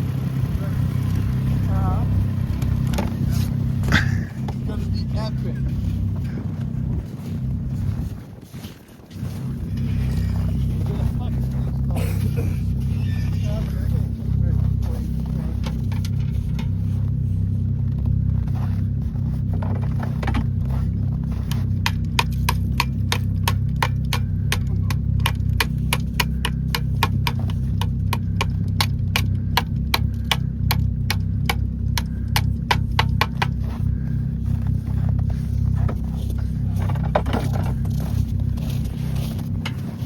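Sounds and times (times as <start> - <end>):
low engine rumble: 0.0 - 40.0.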